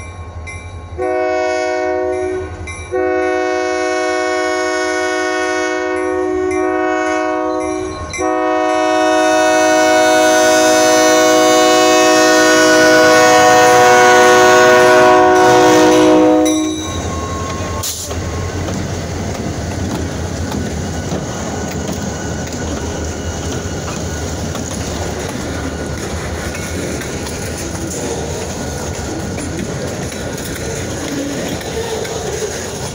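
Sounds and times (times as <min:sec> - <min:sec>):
train wheels rumbling on rail: 0:00.0 - 0:32.9
locomotive air horn blast: 0:01.0 - 0:18.1.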